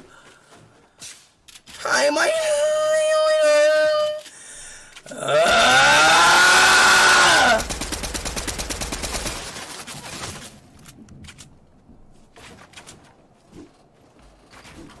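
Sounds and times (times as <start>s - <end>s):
person yelling: 1.8s - 4.3s, 5.1s - 7.6s
rapid rattle of sharp cracks: 7.2s - 11.0s.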